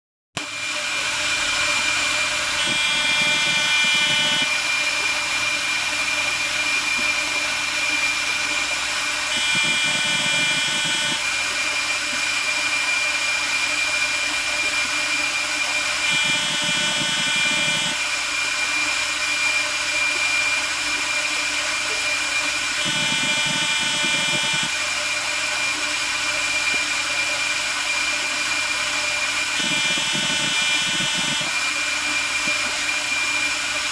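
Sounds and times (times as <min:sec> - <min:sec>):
high-pitched cutting tone: 0:00.4 - 0:11.4, 0:15.8 - 0:18.1, 0:22.7 - 0:24.8, 0:29.4 - 0:33.3
machine high whine: 0:00.4 - 0:33.9.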